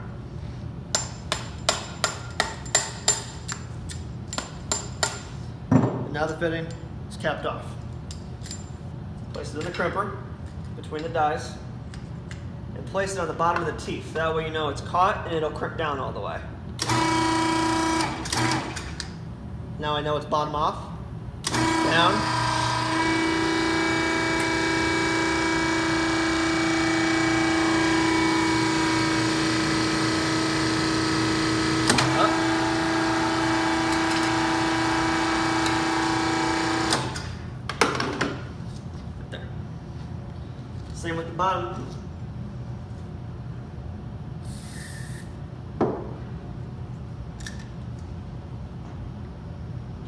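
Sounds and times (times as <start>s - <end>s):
hydraulic hose crimper humming: 16.8s - 19.0s, 21.4s - 37.4s
short hiss: 44.5s - 45.2s.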